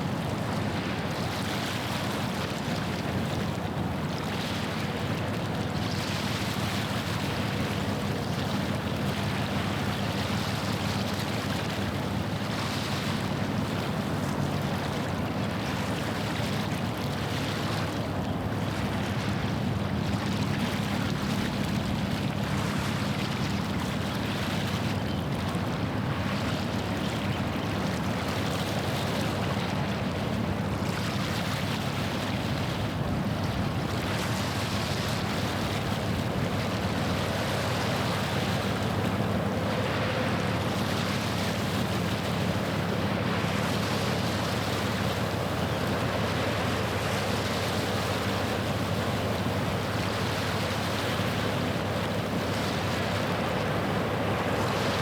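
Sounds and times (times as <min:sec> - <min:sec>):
waves lapping at shore: 0:00.0 - 0:55.0
ship engine drone: 0:35.6 - 0:55.0.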